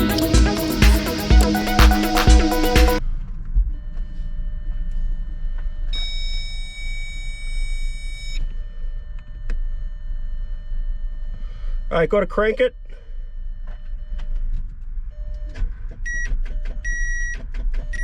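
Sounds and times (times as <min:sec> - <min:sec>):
faint high steady tones: 0:00.0 - 0:03.0
held electronic tone: 0:00.0 - 0:03.0
steady low hum: 0:00.0 - 0:03.0.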